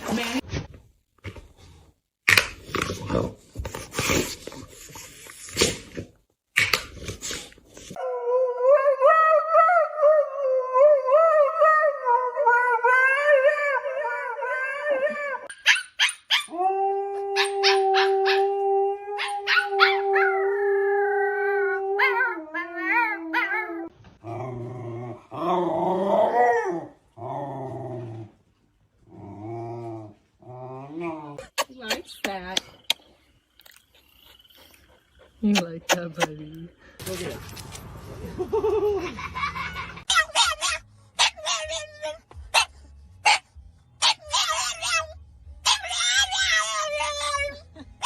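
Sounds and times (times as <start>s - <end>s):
dog howling: 16.5s - 23.9s.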